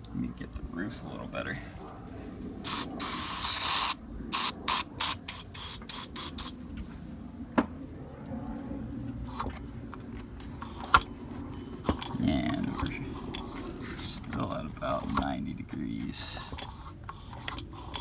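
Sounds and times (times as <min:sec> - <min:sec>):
aerosol can spraying: 0:02.7 - 0:06.6.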